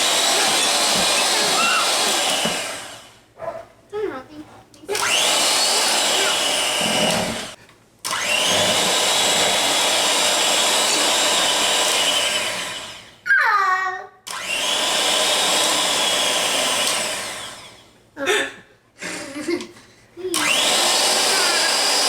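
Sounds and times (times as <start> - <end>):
electric mixer whirring: 0.0 - 3.2, 4.9 - 13.2, 14.3 - 17.9, 20.3 - 22.0.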